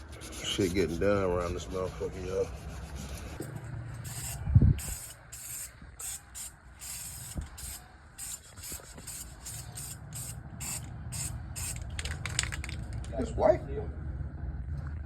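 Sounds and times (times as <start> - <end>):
aerosol spray hissing bursts: 4.0 - 11.8.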